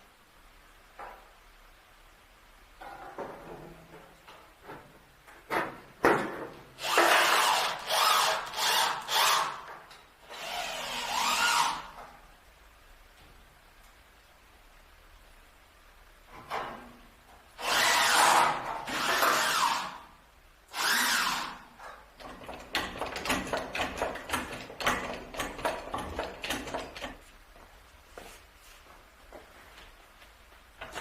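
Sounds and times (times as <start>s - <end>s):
power tool running: 6.8s - 9.6s, 17.6s - 20.0s, 20.7s - 21.6s
knocks and clicks: 22.2s - 27.2s.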